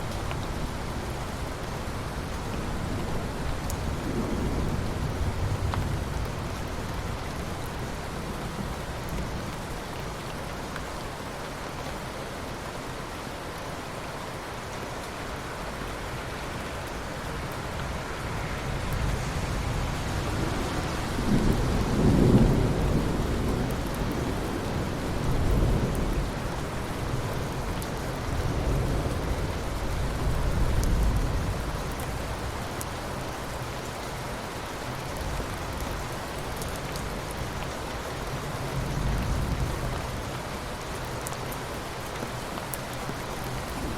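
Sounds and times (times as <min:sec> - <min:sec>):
steady rain falling: 0:00.0 - 0:43.9
thunder rolling: 0:17.6 - 0:24.6.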